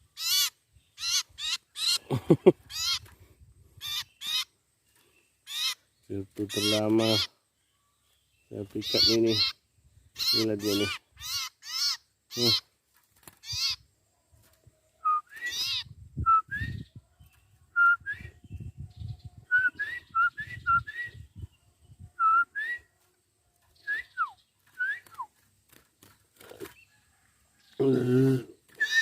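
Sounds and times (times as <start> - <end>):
songbird harsh chatter calls: 0.1 - 2.1, 2.7 - 3.1, 3.8 - 4.6, 5.2 - 7.4, 8.6 - 12.7, 13.3 - 13.9, 15.4 - 16.0
songbird whistled notes: 15.0 - 23.0, 23.8 - 25.3, 28.8 - 29.0.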